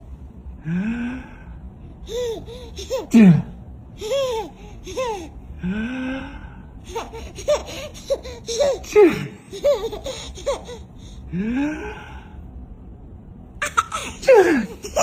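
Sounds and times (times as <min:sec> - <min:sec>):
baby laughing: 0:02.0 - 0:03.4, 0:04.0 - 0:05.4, 0:06.8 - 0:11.2, 0:13.6 - 0:15.0
adult playful voiced sound: 0:02.8 - 0:03.6, 0:08.8 - 0:09.5, 0:14.0 - 0:15.0.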